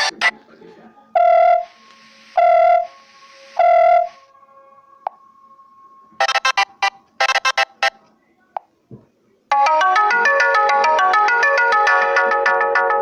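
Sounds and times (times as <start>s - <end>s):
quick electronic beeps: 0.0s - 0.3s, 6.2s - 8.0s
ringtone tune: 0.0s - 0.3s, 1.2s - 1.8s, 2.4s - 3.0s, 6.2s - 8.0s, 9.5s - 13.0s.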